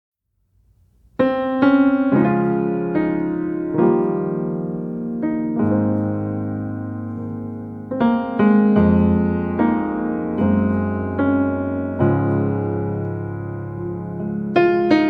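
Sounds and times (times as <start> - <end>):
gentle piano melody: 1.1 - 15.0.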